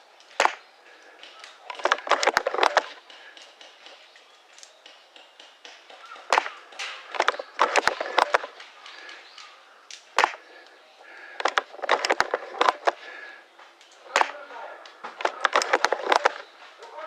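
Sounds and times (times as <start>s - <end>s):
pellets striking cover: 0.4s - 0.6s, 6.2s - 8.5s, 10.2s - 10.4s, 15.1s - 16.4s
airsoft gunfire: 6.0s - 8.5s, 10.2s - 10.4s, 15.2s - 16.4s.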